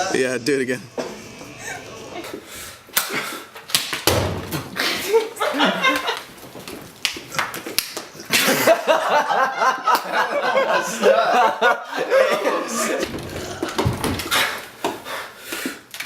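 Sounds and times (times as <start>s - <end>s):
people laughing: 1.4s - 2.5s, 4.8s - 6.4s, 8.2s - 14.6s.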